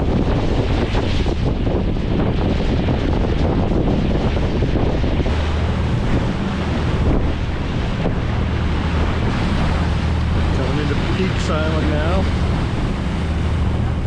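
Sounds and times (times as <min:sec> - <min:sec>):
water rushing past hull: 0:00.0 - 0:14.0
wind buffeting microphone: 0:00.0 - 0:14.0
ferry engines humming: 0:05.3 - 0:14.0.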